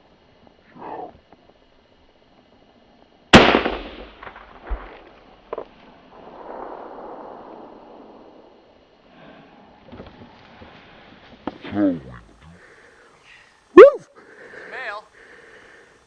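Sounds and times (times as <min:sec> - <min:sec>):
rifle shot echoing: 0:03.4 - 0:05.2.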